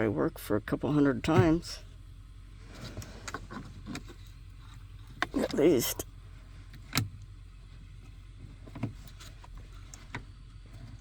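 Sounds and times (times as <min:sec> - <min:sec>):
low steady hum: 0:00.0 - 0:11.0
steering column clunking: 0:00.7 - 0:11.0.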